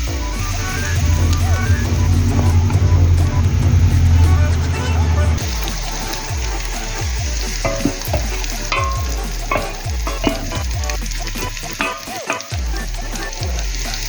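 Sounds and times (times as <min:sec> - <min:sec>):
food sizzling in a pan: 0:05.4 - 0:14.0
spoon scraping a pan: 0:07.6 - 0:12.6.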